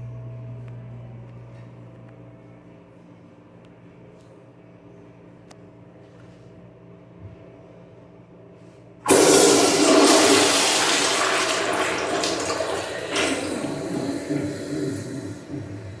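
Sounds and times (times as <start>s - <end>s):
toilet flushing: 9.1s - 16.0s.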